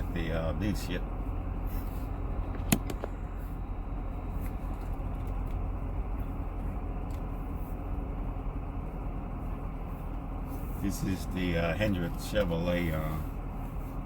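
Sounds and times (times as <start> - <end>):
car engine low rumble: 0.0 - 14.0
sharp click: 2.6 - 3.1.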